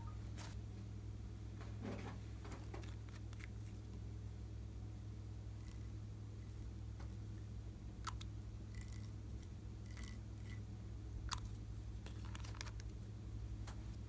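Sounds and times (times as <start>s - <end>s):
low hum: 0.0s - 14.0s.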